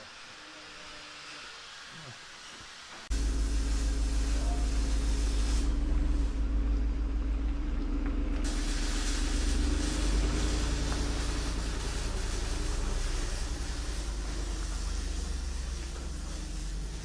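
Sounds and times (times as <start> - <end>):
tyre hiss on road: 0.0 - 7.1, 8.2 - 17.0
vehicle engine rumble: 3.1 - 17.0.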